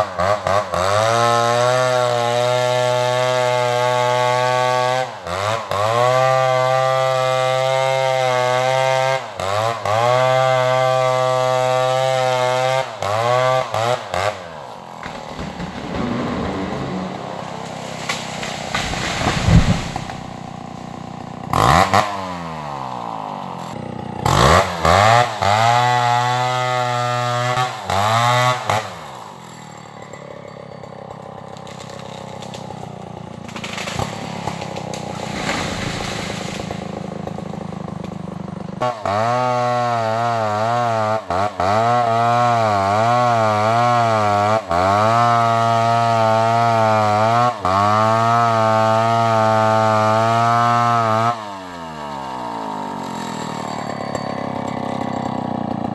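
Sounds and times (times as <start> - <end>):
chainsaw revving: 0.0 - 55.9
sharp loud crack: 15.0 - 20.6.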